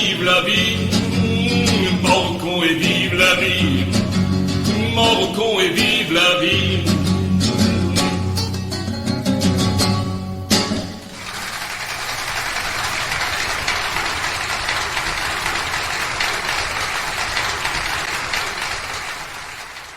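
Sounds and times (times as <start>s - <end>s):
audience applause: 0.0s - 0.7s, 11.0s - 19.9s.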